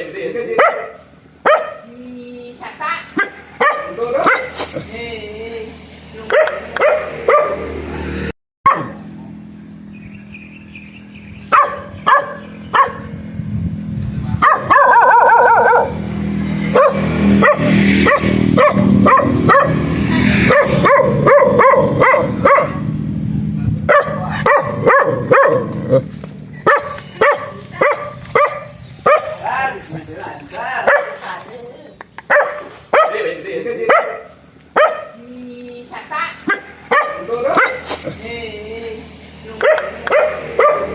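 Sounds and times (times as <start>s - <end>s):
dog barking: 0.5s - 1.9s, 3.1s - 4.6s, 6.3s - 7.8s, 8.6s - 9.0s, 11.5s - 13.2s, 14.4s - 16.0s, 16.7s - 23.0s, 23.9s - 26.0s, 26.6s - 29.5s, 30.8s - 31.3s, 32.3s - 35.2s, 36.4s - 37.9s, 39.6s - 40.9s.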